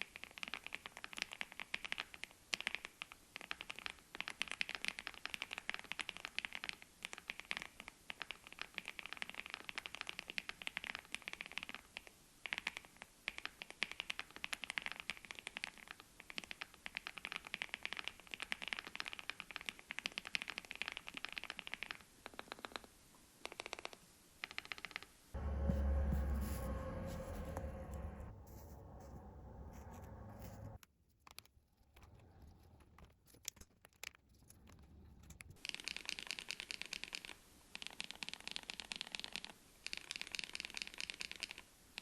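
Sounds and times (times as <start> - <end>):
fast mechanical keyboard typing: 35.2 - 41.6.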